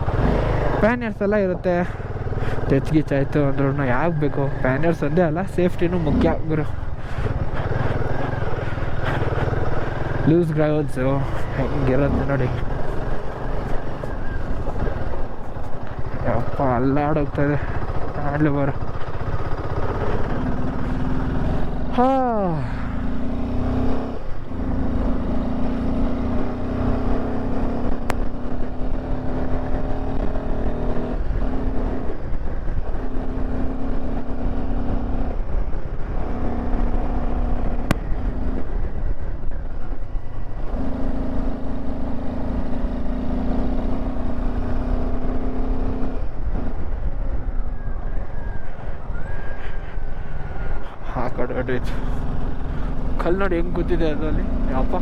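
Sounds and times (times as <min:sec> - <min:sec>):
motorcycle engine running: 0:00.0 - 0:55.0
wind and road noise: 0:00.0 - 0:55.0.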